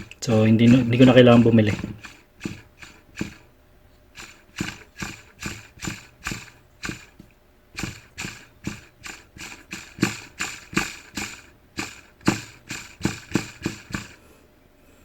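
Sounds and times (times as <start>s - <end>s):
sharp valve clicking: 0.0s - 3.5s, 4.1s - 7.2s, 7.8s - 14.2s.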